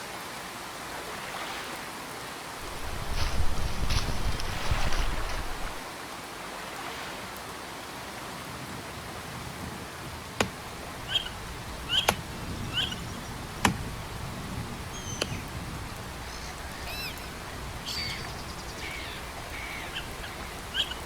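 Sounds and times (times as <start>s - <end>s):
rain hissing on water: 2.4s - 7.6s, 8.2s - 21.0s
short bird calls: 10.7s - 21.0s.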